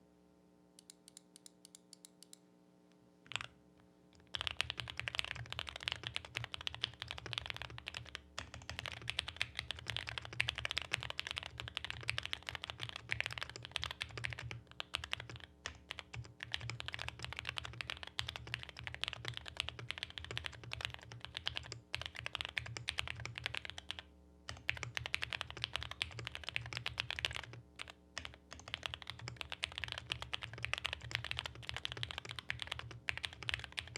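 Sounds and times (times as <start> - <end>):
mechanical keyboard typing: 3.3 - 3.5, 4.2 - 33.9.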